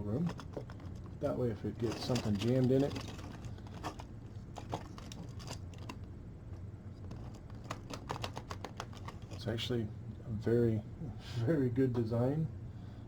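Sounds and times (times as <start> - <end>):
plastic track links clicking: 7.1 - 9.4.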